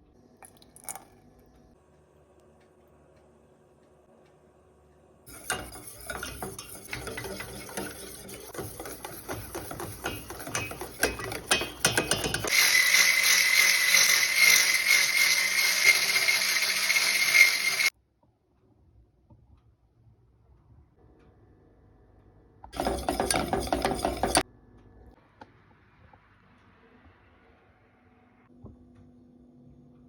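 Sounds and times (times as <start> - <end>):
utensil clinking in a bowl: 5.3 - 12.6, 22.8 - 24.4.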